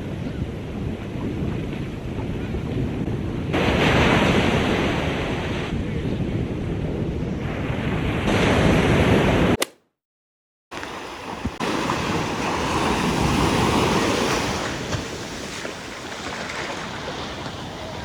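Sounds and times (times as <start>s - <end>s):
wind on microphone: 0.0s - 9.6s
ocean surf washing ashore: 3.5s - 5.7s, 10.8s - 18.0s.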